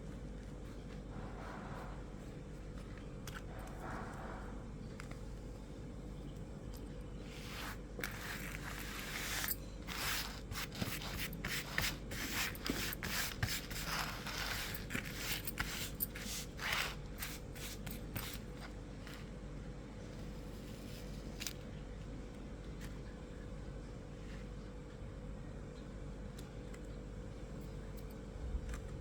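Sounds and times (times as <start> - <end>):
faint steady hum: 0.0 - 29.0.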